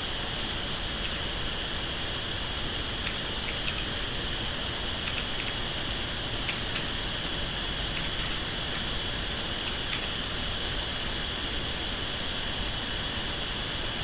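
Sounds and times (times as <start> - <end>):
keypad keys clicking: 3.0 - 3.9, 5.0 - 5.7, 6.4 - 8.9, 9.6 - 10.1.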